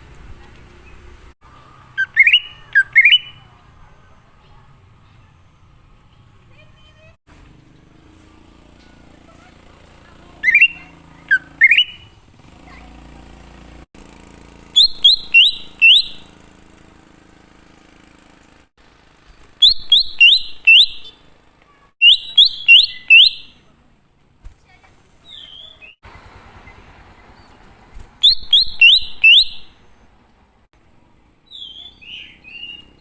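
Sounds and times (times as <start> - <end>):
bird singing whistles: 2.0 - 3.4, 10.4 - 12.2, 14.8 - 16.3, 19.6 - 21.2, 22.0 - 23.6, 28.2 - 29.8, 31.5 - 33.0.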